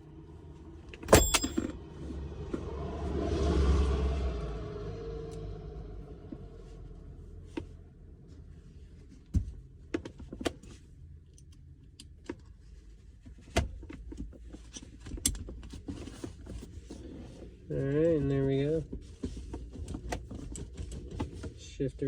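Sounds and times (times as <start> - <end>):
gear shifter clicks and knocks: 1.0 - 1.8, 13.3 - 16.8, 18.8 - 21.6.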